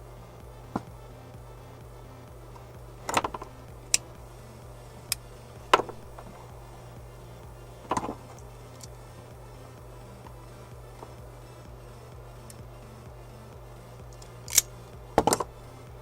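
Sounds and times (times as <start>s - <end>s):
steady low hum: 0.0s - 16.0s
hand tools clicking and tapping: 2.6s - 4.2s, 7.8s - 9.0s, 14.1s - 15.5s.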